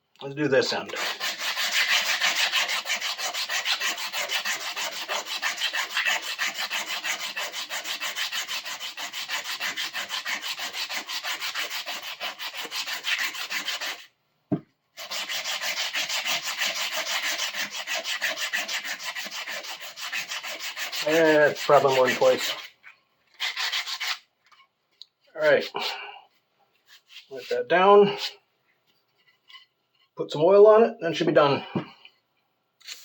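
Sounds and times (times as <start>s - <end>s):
sandpaper rubbing on wood: 0.8s - 14.1s, 15.0s - 22.7s, 23.4s - 24.2s.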